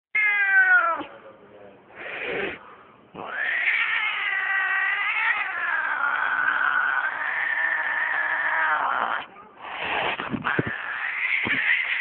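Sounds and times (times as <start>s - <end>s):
cat yowling: 0.2s - 1.1s, 3.2s - 9.3s, 10.4s - 12.0s.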